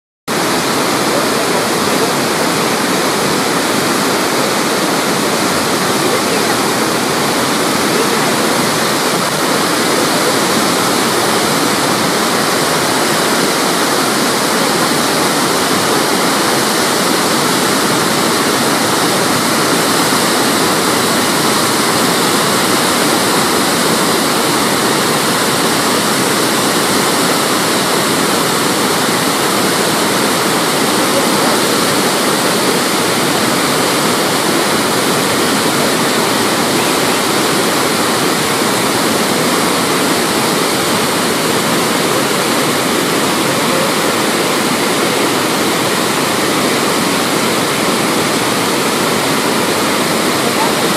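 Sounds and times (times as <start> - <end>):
waterfall rushing: 0.3 - 50.9.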